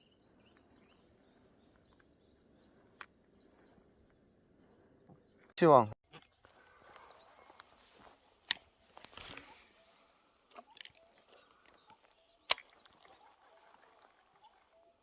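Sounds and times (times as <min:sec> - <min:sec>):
faint handling noises: 0:06.1 - 0:12.2
soft rustle: 0:06.4 - 0:10.3
sharp clicks: 0:11.6 - 0:13.1.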